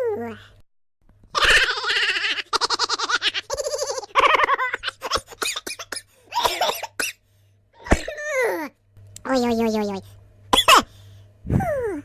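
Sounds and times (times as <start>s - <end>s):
high-pitched laughter: 1.3s - 5.4s.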